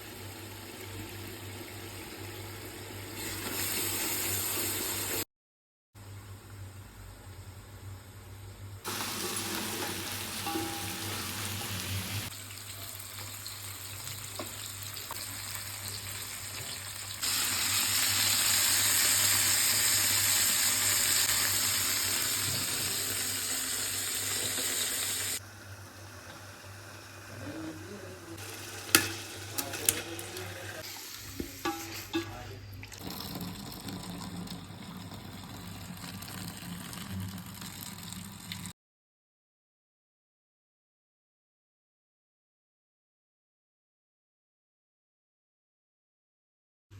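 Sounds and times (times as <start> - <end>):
food sizzling in pot: 0.0 - 5.2, 8.9 - 38.7
utensil clinking against pot: 9.0 - 12.2, 31.6 - 32.5.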